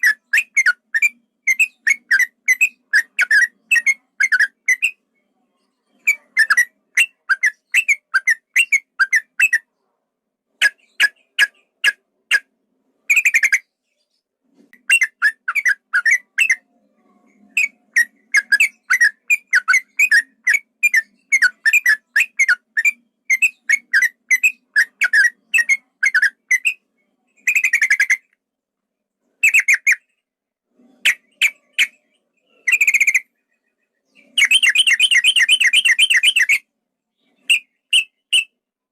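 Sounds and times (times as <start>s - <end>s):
bird singing whistled notes: 0.0s - 5.0s, 17.6s - 26.8s, 32.6s - 36.7s, 37.3s - 38.6s
bird harsh chattering: 34.2s - 36.6s.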